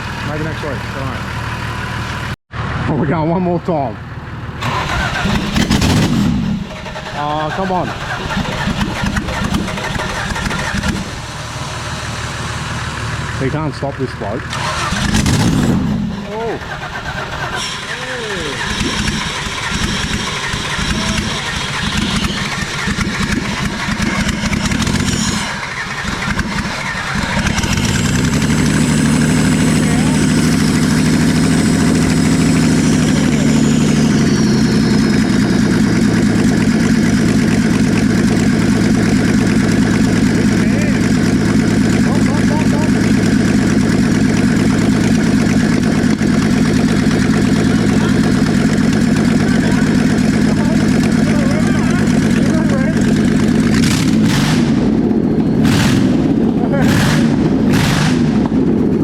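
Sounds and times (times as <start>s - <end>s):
car engine cranking and running: 0.0s - 59.0s.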